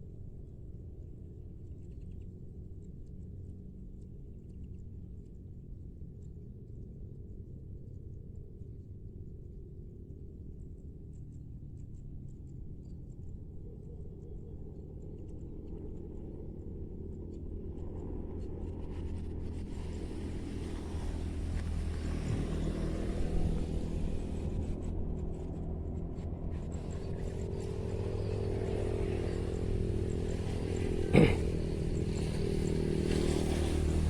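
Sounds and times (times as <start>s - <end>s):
vehicle engine approaching: 18.8s - 34.0s.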